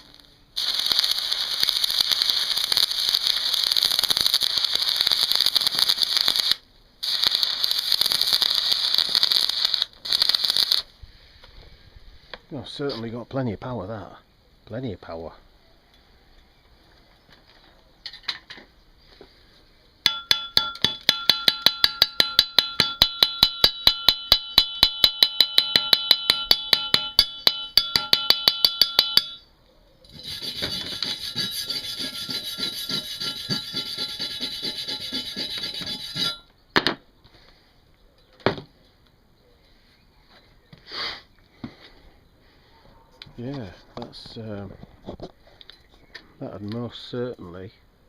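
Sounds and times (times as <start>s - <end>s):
welding arc crackling: 0.0s - 10.9s, 30.1s - 36.4s.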